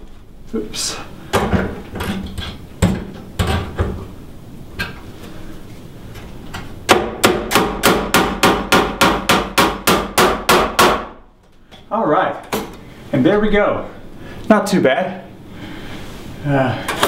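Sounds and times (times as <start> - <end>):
hammer striking nails into wood: 6.9 - 11.2.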